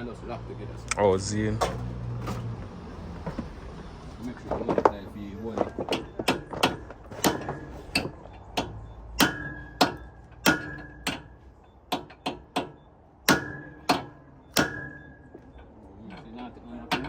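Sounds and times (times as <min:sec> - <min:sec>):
hammer striking metal: 0:06.3 - 0:15.4.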